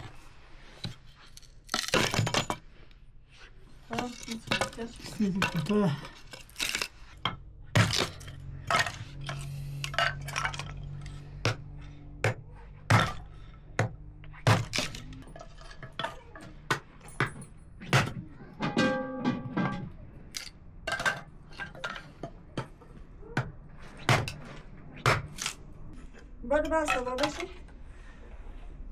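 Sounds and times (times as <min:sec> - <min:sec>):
dishes clinking and knocking: 0:14.5 - 0:25.3.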